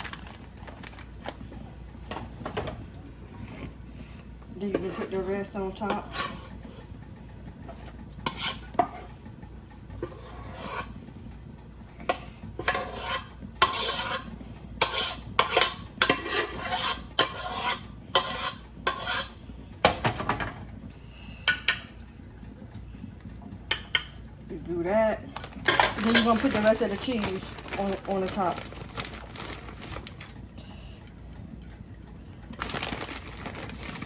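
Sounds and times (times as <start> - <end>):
spoon scraping cookware: 4.7 - 6.9, 7.7 - 9.1, 10.0 - 11.0, 12.1 - 19.4.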